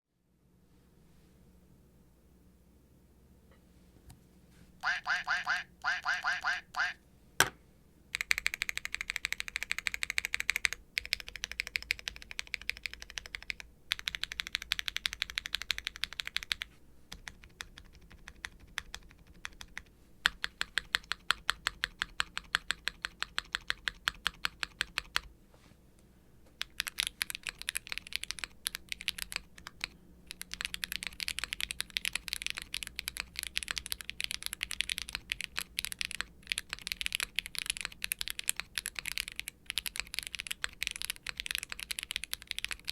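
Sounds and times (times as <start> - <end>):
typing on mechanical keyboard: 8.1 - 25.3, 26.6 - 42.9.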